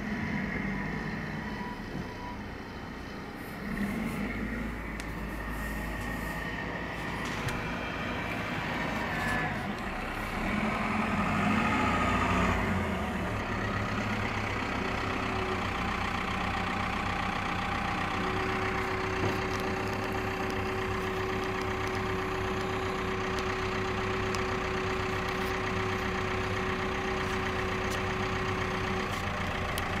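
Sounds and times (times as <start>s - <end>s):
steady whine: 0.0s - 10.4s
truck engine idling: 0.0s - 30.0s.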